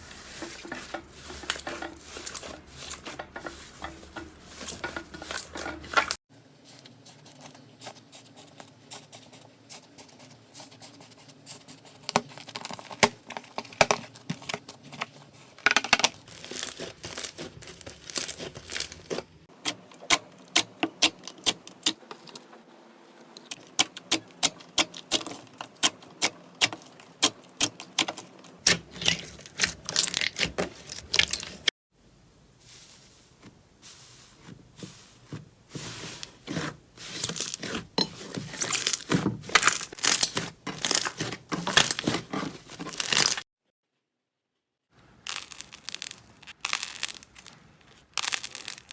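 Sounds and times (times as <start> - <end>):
slime crackling and popping: 16.2 - 19.2, 45.3 - 48.9.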